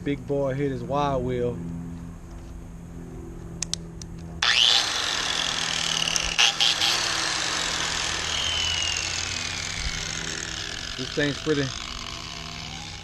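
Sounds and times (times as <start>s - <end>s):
wire wheel tool whining: 4.4s - 13.0s.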